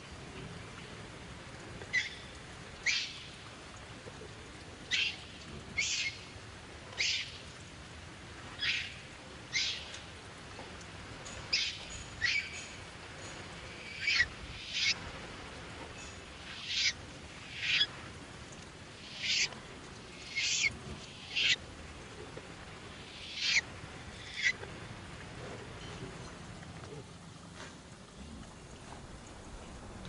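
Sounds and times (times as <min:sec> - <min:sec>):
baby monkey squealing cries: 0:14.0 - 0:15.0, 0:16.6 - 0:17.0, 0:17.6 - 0:17.9, 0:19.1 - 0:19.5, 0:20.3 - 0:20.7, 0:21.3 - 0:21.6, 0:23.3 - 0:23.6, 0:24.2 - 0:24.5.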